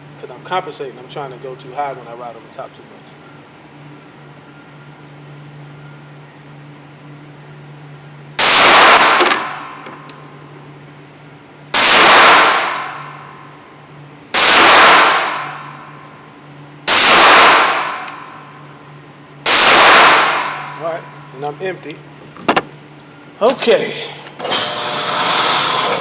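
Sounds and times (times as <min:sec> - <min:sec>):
pistol shots: 0:08.4 - 0:09.8, 0:11.7 - 0:13.0, 0:14.4 - 0:15.7, 0:16.9 - 0:18.3, 0:19.5 - 0:20.7.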